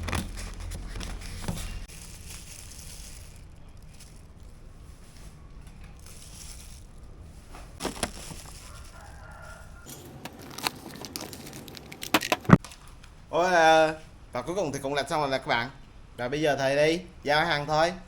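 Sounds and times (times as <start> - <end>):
handling clicks and crinkling: 0.0 - 13.2.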